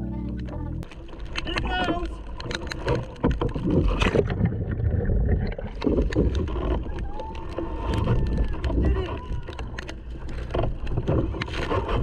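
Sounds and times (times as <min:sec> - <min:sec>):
water splashing and churning: 0:00.8 - 0:12.0
wind buffeting microphone: 0:03.3 - 0:12.0.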